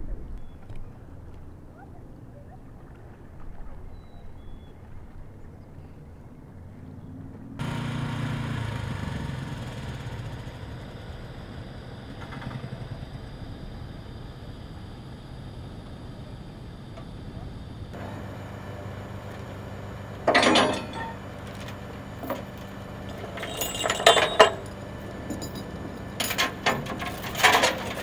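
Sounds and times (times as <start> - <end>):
faint bird chirps: 3.6 - 6.2
diesel construction equipment drone: 7.6 - 28.0
rapid rattle: 20.2 - 28.0.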